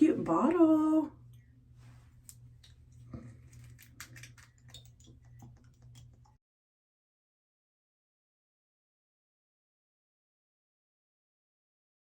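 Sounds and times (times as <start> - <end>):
low steady hum: 0.0 - 6.4.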